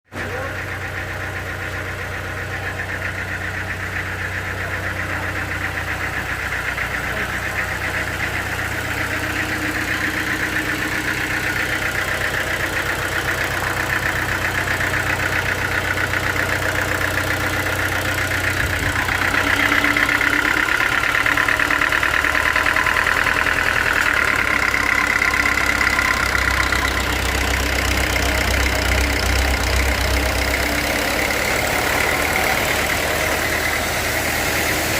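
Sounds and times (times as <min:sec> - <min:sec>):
sawmill machinery humming: 0:00.0 - 0:34.9
machinery whine: 0:00.2 - 0:34.9
deep rumble: 0:04.6 - 0:34.9.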